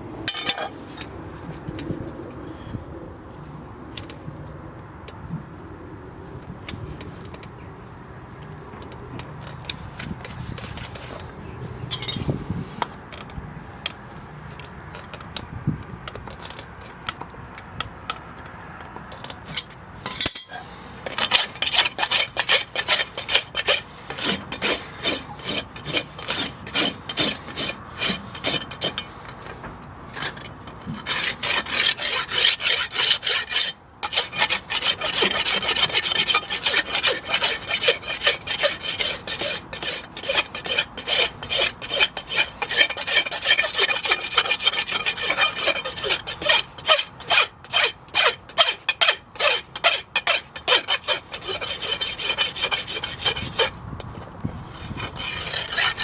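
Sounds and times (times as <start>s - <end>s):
light scraping: 0.3s - 1.2s
hoof rasp filing: 19.6s - 56.0s.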